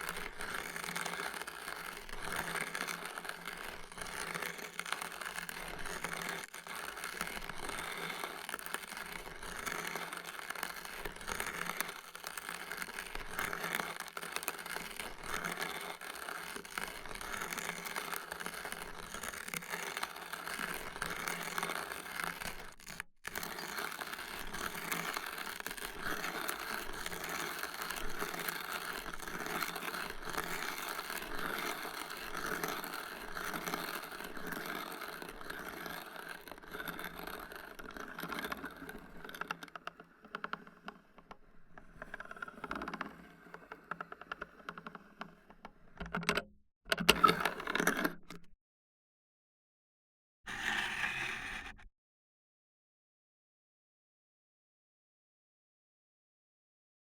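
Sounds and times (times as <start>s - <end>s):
hand coffee grinder crunching beans: 0.0s - 39.6s, 46.9s - 48.4s.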